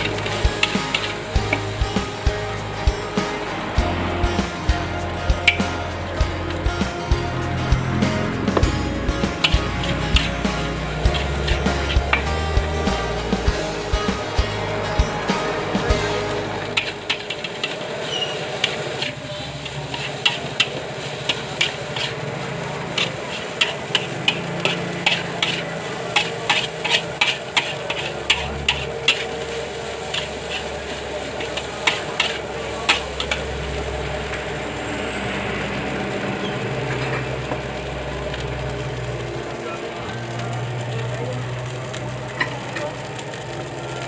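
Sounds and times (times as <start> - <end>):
food sizzling: 0.0 - 44.0
metal spatula clanking on wok: 23.0 - 29.4, 31.4 - 33.6.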